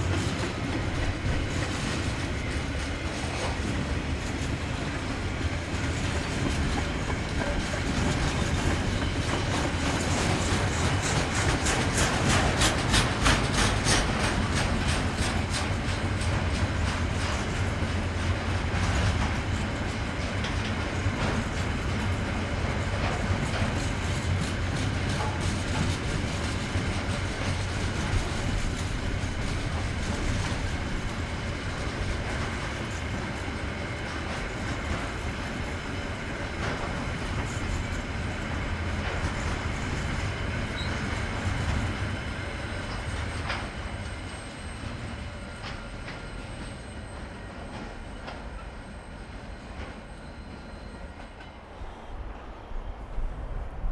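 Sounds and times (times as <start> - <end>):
rail joint clicks: 0.0 - 53.9
train wheels on rails: 0.0 - 53.9
high wheel squeal: 40.6 - 52.2.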